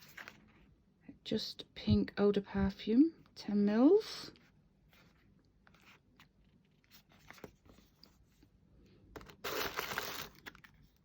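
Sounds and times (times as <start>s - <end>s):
packaging rustling: 9.2s - 11.0s.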